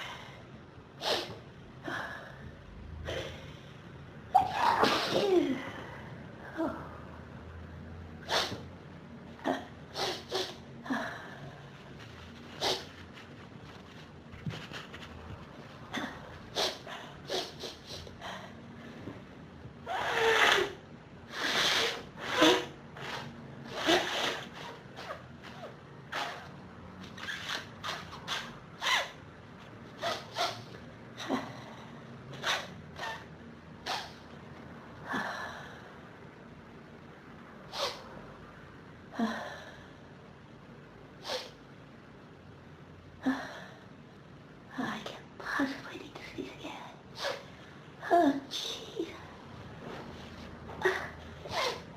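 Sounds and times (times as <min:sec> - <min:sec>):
person sneezing: 0:04.4 - 0:05.8, 0:08.2 - 0:08.7, 0:09.5 - 0:10.7, 0:15.9 - 0:18.1, 0:50.7 - 0:51.9
person sniffing: 0:08.2 - 0:08.6, 0:09.9 - 0:10.7, 0:11.7 - 0:15.0, 0:15.9 - 0:18.1, 0:21.3 - 0:25.2
person breathing: 0:10.0 - 0:14.0.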